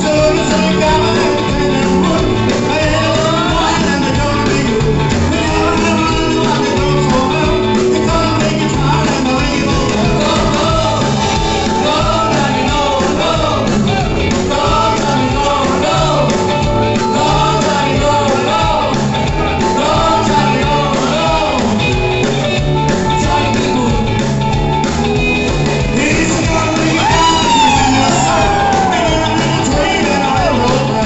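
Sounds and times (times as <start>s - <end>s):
rock and roll song with singer: 0.0s - 31.0s.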